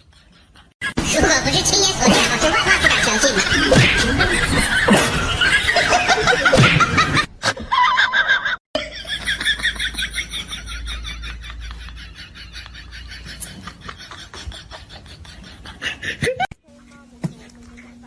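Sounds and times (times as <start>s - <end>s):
laughter: 0.0s - 1.0s, 2.0s - 16.5s
short laugh-like pulses: 2.0s - 7.6s.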